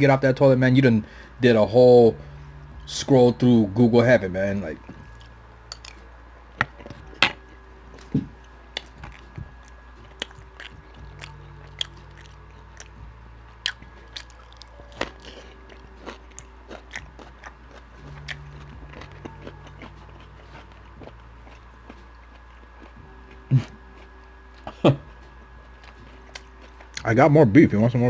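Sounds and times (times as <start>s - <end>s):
person chewing food: 4.8s - 27.0s.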